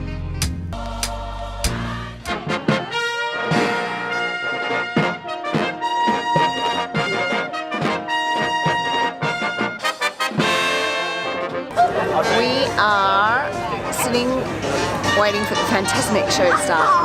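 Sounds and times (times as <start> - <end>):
upbeat brass music with beat: 0.0 - 12.5.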